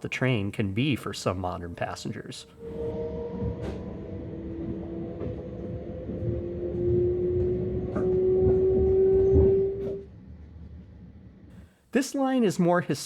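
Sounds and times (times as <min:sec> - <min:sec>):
train wheel rumble: 0:00.0 - 0:11.7
electric train motor whine: 0:01.5 - 0:11.6.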